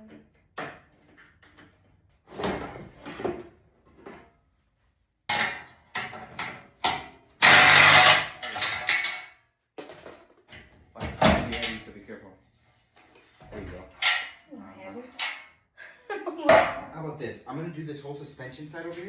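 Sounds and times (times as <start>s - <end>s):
loud harsh burst: 7.4s - 8.4s.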